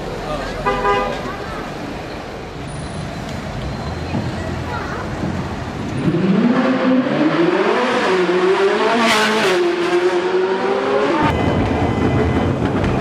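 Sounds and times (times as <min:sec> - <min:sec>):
sports car engine accelerating: 0:05.8 - 0:11.4.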